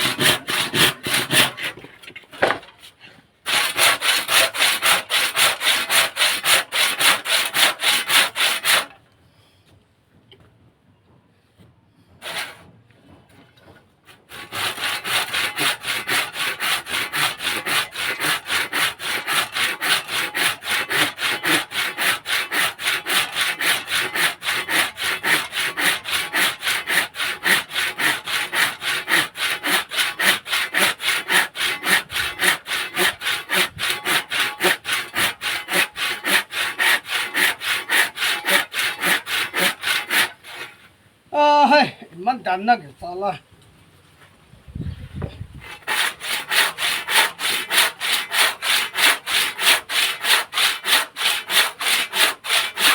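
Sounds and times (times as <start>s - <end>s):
hand saw cutting wood: 0.0s - 9.0s, 12.2s - 40.9s, 45.5s - 52.9s.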